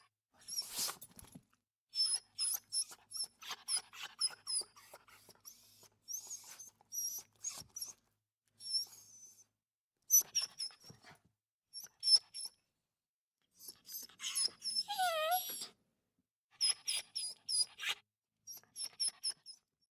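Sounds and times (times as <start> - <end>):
dog whimpering: 2.1 - 5.4, 13.6 - 15.8.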